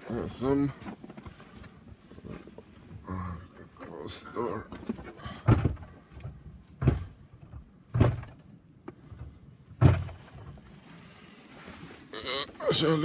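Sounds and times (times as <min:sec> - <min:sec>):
dull thumps: 0:04.6 - 0:10.7.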